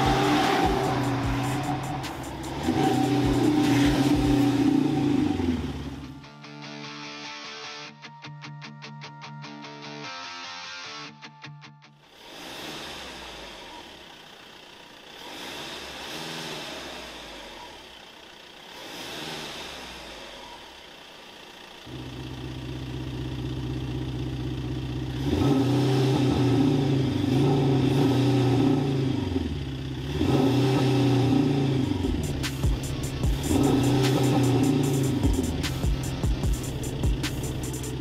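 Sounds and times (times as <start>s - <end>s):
simulated engine note revving: 0.0s - 6.2s, 21.9s - 38.0s.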